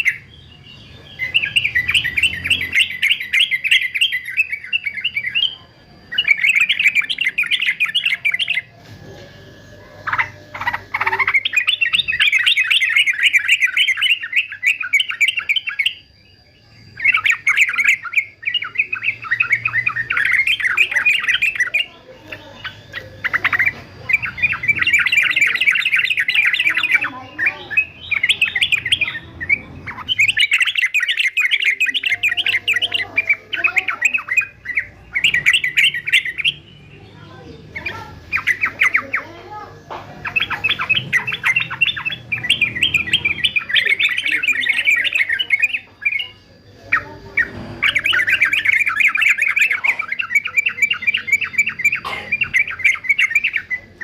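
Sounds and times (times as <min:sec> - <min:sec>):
bird singing in chattering bouts: 0:00.0 - 0:54.0.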